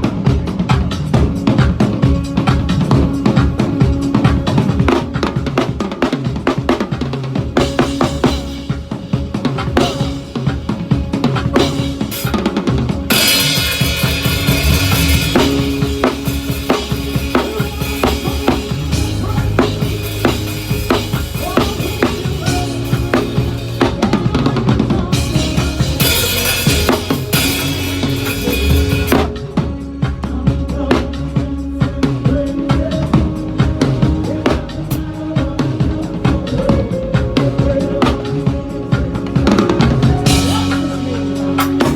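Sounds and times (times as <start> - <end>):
drum kit groove: 0.0 - 41.9
cymbals washing: 7.5 - 29.4
held bass notes: 9.8 - 41.9.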